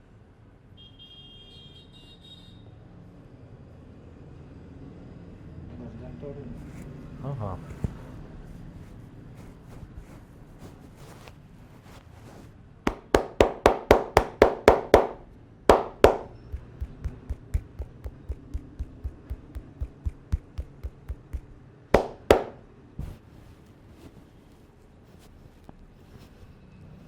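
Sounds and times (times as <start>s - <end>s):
hands slapping on head: 12.9s - 22.6s.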